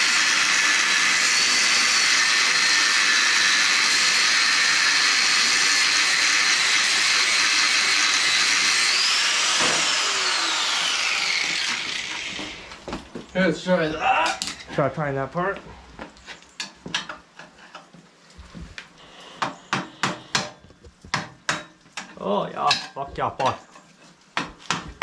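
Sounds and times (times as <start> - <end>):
angle grinder whining: 0.0 - 12.9.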